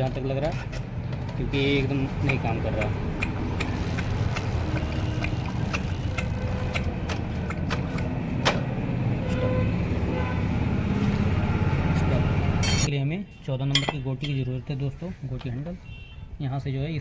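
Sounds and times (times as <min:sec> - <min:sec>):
metal tools clinking: 0:12.6 - 0:12.9, 0:13.7 - 0:14.6.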